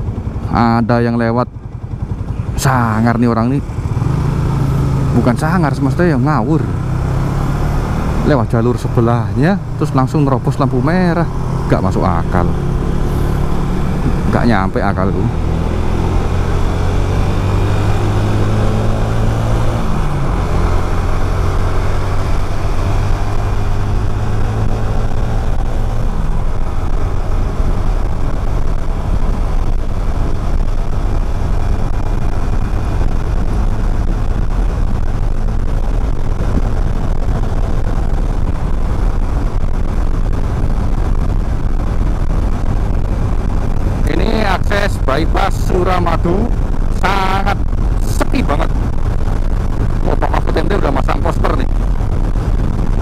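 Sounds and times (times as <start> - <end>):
motorcycle engine: 0.0 - 53.0
rushing wind and road noise: 0.0 - 53.0.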